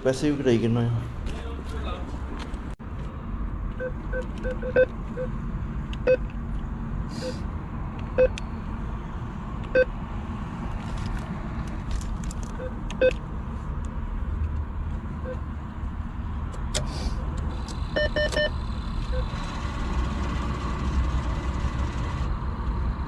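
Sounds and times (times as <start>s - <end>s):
keypad beeps: 3.8s - 5.3s, 6.0s - 6.2s, 18.0s - 18.5s.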